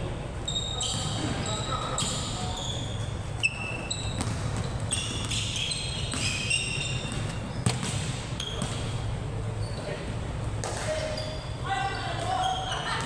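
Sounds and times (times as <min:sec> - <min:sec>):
sneakers squeaking on floor: 0:00.4 - 0:13.0
basketball bouncing: 0:04.0 - 0:09.0.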